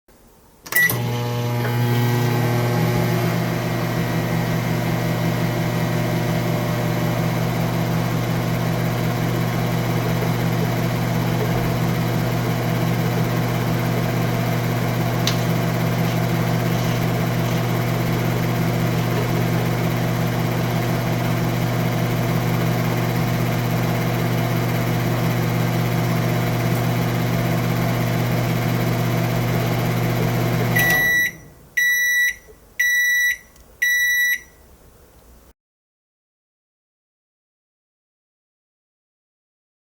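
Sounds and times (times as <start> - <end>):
microwave button beep: 0.7 - 1.1, 30.7 - 34.6
microwave oven humming: 0.7 - 34.8.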